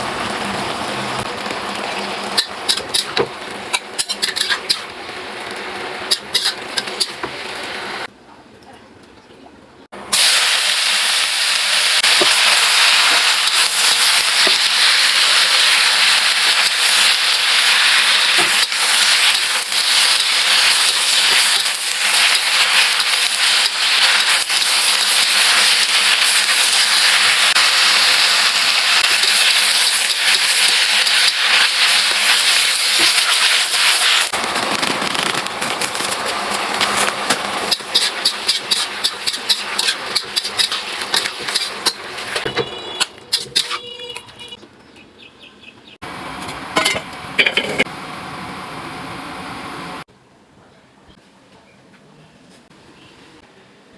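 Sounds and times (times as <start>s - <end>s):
food sizzling in hot oil: 0.0s - 8.1s, 10.1s - 42.4s.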